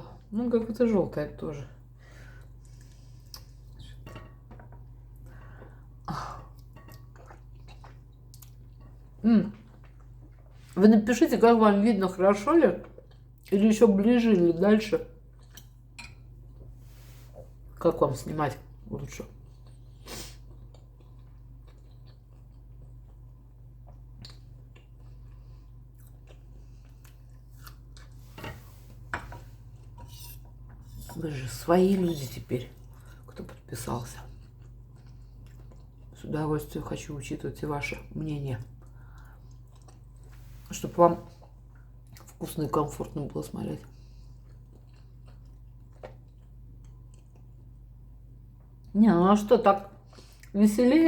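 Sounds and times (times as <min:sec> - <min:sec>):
low electrical hum: 0:00.0 - 0:51.0
quiet eating noises: 0:00.0 - 0:51.0
person chewing food: 0:02.2 - 0:10.8, 0:12.8 - 0:13.6, 0:15.2 - 0:17.8, 0:19.3 - 0:31.1, 0:32.7 - 0:36.2, 0:38.7 - 0:40.7, 0:41.3 - 0:42.4, 0:43.8 - 0:48.9.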